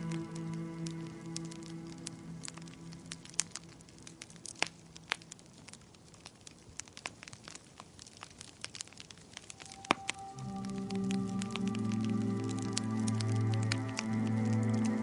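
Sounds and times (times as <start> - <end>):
soft music chord: 0.0 - 4.4, 9.6 - 15.0
wood fire crackling and popping: 0.0 - 15.0.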